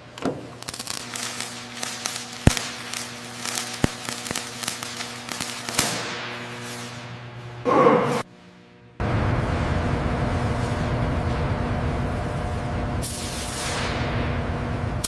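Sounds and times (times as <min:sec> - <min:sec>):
steady low hum: 0:00.0 - 0:15.0
sharp clicks and crackles: 0:00.6 - 0:06.0.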